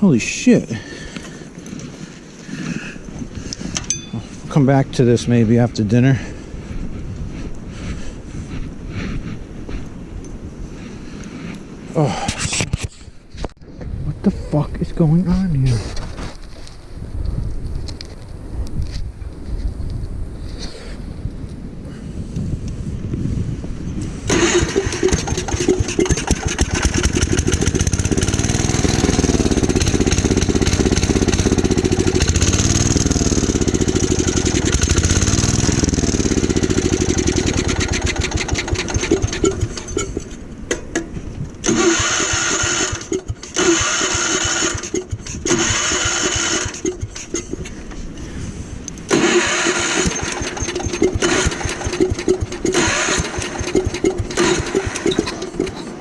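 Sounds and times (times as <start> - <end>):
tractor engine running: 24.3 - 48.2, 48.9 - 56.0.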